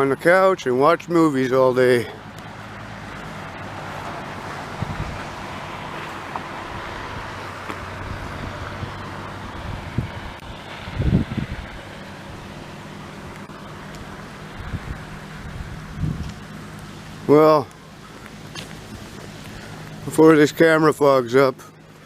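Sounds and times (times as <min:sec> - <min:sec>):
traffic noise: 0:00.0 - 0:22.0
wind on microphone: 0:04.6 - 0:05.4, 0:06.6 - 0:12.6, 0:14.5 - 0:16.5.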